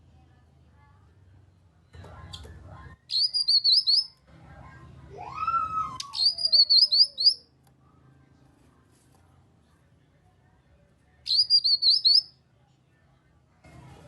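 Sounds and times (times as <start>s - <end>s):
high hooked bird chirps: 3.1s - 4.1s, 6.0s - 7.4s, 11.3s - 12.3s.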